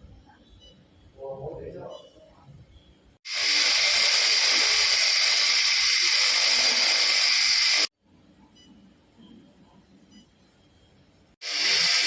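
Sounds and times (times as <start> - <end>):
laser cleaning gun hissing: 3.3 - 7.9, 11.4 - 12.0.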